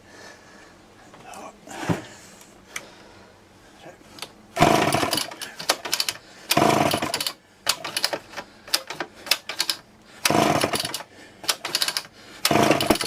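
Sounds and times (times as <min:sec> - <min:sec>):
chainsaw recoil starter pulls: 0:04.6 - 0:13.0
clicks and rattles: 0:04.9 - 0:13.0.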